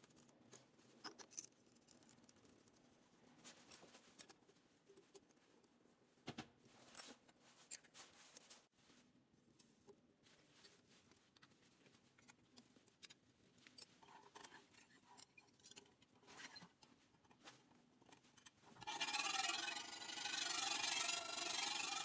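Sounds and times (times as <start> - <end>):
abrasive rubbing: 18.8 - 22.0.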